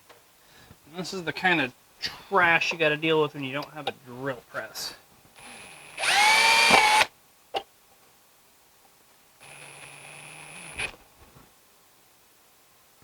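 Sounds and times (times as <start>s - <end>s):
electric drill spinning: 5.4s - 7.1s, 9.4s - 11.0s.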